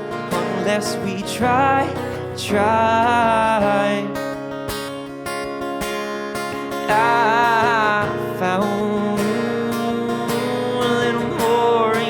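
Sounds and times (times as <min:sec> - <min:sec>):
person singing: 0:00.0 - 0:04.4, 0:06.9 - 0:12.0
acoustic guitar strumming: 0:00.0 - 0:12.0.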